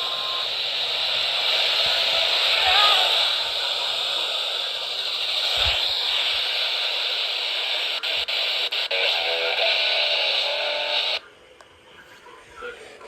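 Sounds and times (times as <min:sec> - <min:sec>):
faint radio signal: 0:00.0 - 0:13.0
radio static hiss: 0:00.0 - 0:13.0.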